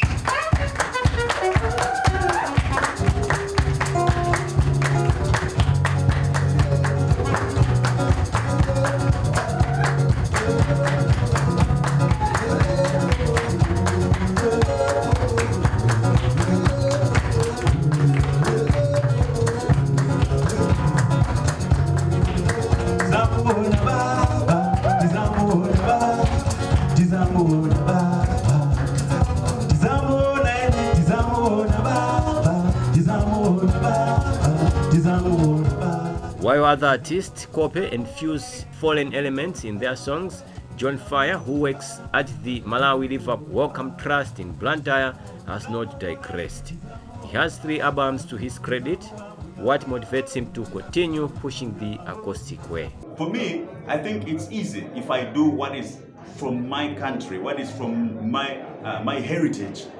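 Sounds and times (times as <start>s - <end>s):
bass line: 0.0s - 45.0s
person singing: 0.0s - 53.1s
acoustic guitars strumming: 0.0s - 53.2s.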